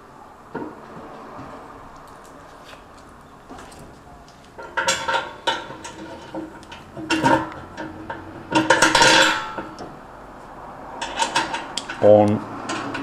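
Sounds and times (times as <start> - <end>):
metal hardware clinking: 4.4 - 10.0, 11.0 - 13.0.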